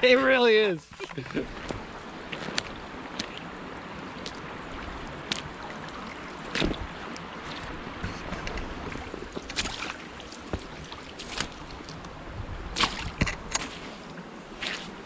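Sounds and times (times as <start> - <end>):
footsteps crunching on a trail: 1.2 - 12.1.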